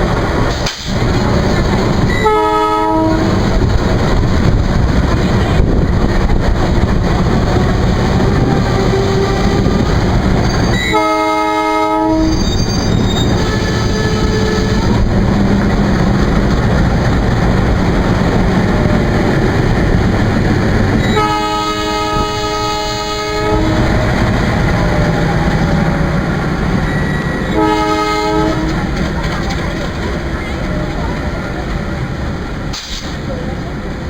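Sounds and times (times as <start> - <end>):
train rumble and wheel clatter: 0.0 - 34.0
locomotive horn: 2.1 - 3.6, 8.0 - 15.6, 21.0 - 25.9, 26.8 - 29.0.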